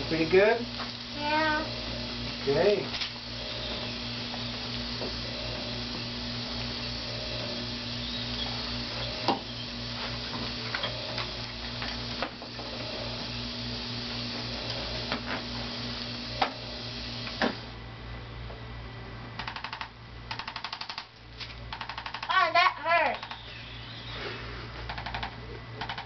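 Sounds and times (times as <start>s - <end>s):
electrical hum: 0.0s - 26.0s
sharp clicks and knocks: 19.4s - 22.4s, 24.8s - 26.0s.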